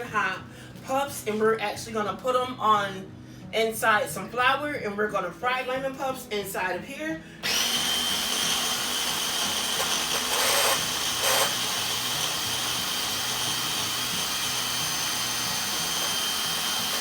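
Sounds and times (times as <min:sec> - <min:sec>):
electric grinder whining: 0:07.4 - 0:17.0.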